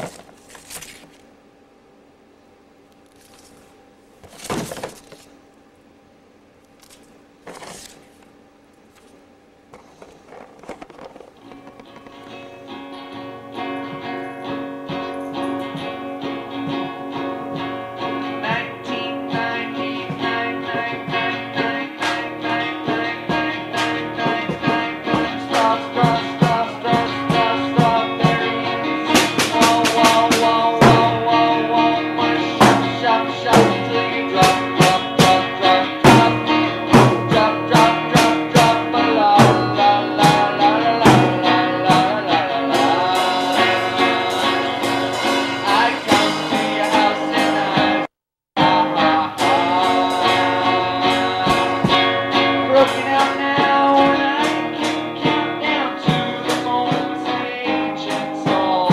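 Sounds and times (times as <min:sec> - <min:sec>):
guitar music: 0:11.4 - 0:58.9.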